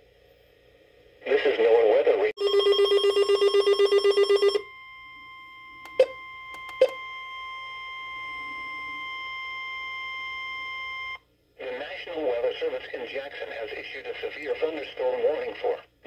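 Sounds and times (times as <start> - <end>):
steady warning alarm tone: 2.4 - 11.2
sharp clicks: 5.8 - 7.0.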